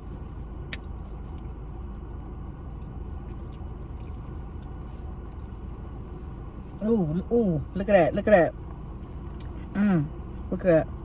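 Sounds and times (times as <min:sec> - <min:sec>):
low background rumble: 0:00.0 - 0:11.0
person chewing food: 0:00.7 - 0:06.0.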